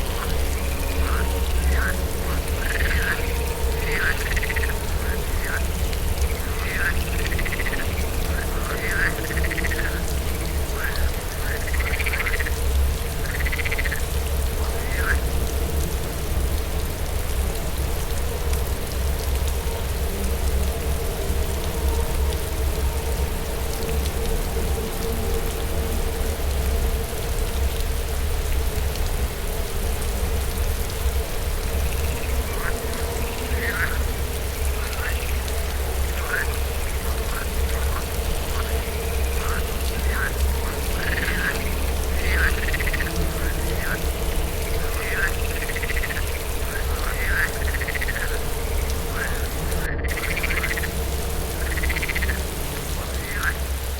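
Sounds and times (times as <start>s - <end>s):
frogs trilling: 0.0s - 15.4s, 31.4s - 53.9s
low wind rumble: 0.0s - 53.9s
rain hiss: 0.0s - 53.9s.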